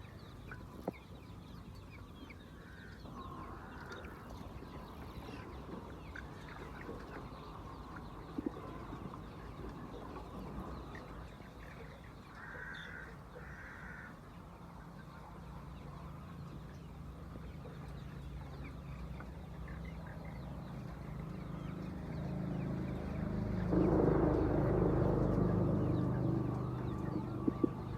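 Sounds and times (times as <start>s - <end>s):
low hum: 16.1s - 27.9s.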